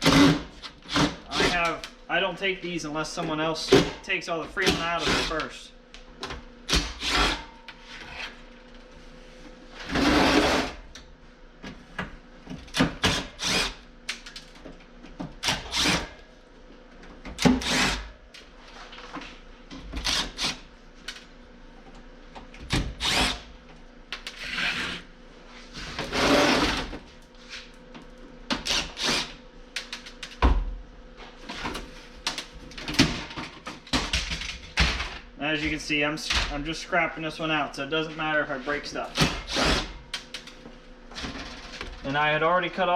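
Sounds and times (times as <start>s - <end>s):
power drill running: 15.6s - 16.0s.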